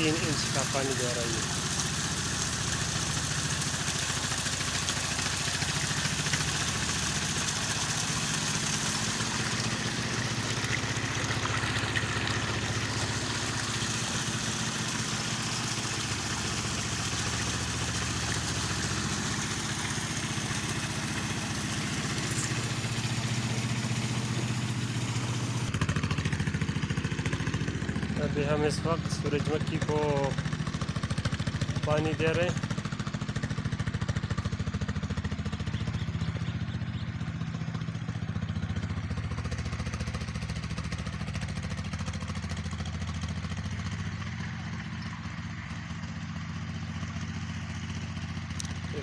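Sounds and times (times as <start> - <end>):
water gushing from outlet: 0.0 - 25.8, 28.2 - 36.7, 38.0 - 46.1, 47.0 - 49.0
low mechanical drone: 0.0 - 26.2.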